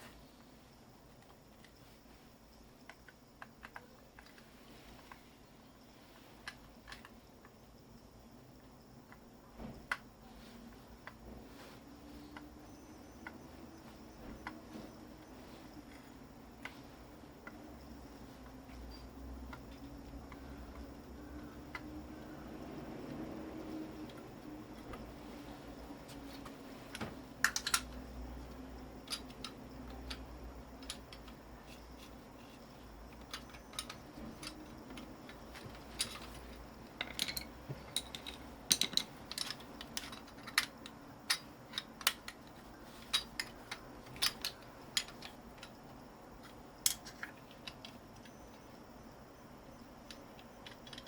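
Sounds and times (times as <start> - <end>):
hand tools clicking and snipping wire: 29.0 - 48.4.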